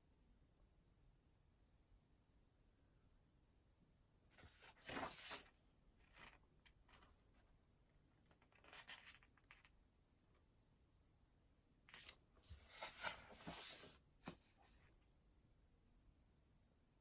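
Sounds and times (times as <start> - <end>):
paper rustling: 4.4 - 7.2, 8.3 - 9.7, 11.9 - 14.9.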